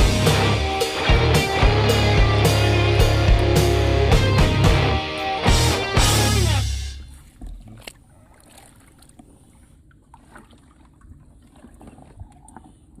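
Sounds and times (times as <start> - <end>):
rock music: 0.0 - 7.1
faint trickling water: 7.0 - 13.0.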